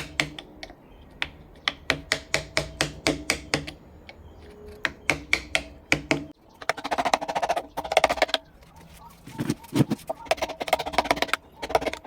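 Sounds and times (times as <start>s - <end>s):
mallet striking chisel into wood: 0.0s - 0.5s, 1.2s - 3.8s, 4.8s - 6.4s.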